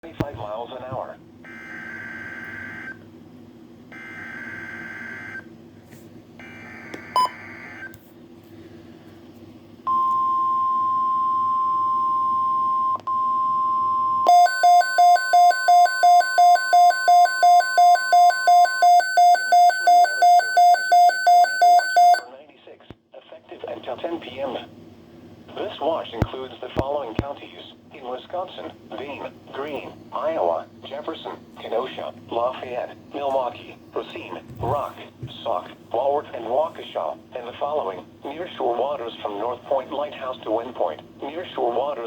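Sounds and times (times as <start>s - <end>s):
steady warning alarm tone: 1.5s - 3.0s, 4.0s - 5.5s, 6.4s - 7.9s, 9.9s - 22.3s.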